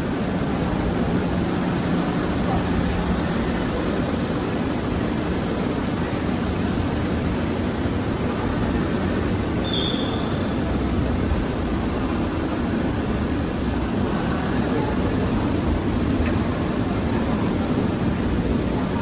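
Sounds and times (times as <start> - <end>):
brief high squeak: 9.6 - 10.5.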